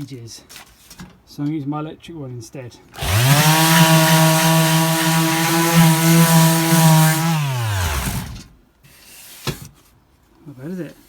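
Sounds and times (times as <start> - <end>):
electric sander on wood: 3.0 - 8.5
sander winding down: 3.0 - 8.5.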